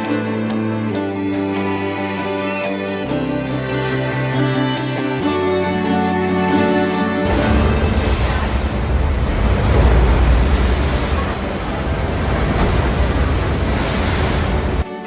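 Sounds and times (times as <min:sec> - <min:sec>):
sea surf: 0:00.0 - 0:15.0
wind buffeting microphone: 0:07.2 - 0:14.9.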